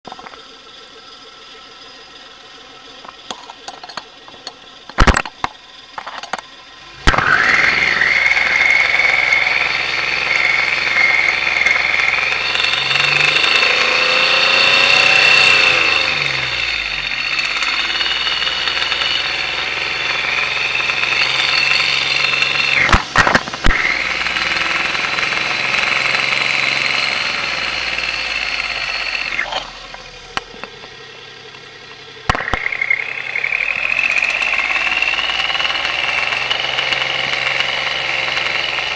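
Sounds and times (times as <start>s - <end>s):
car engine starting and running: 0.0s - 38.9s
high-pitched whine: 0.1s - 36.0s
starter clicks: 3.0s - 6.5s, 22.7s - 24.1s, 32.3s - 34.4s.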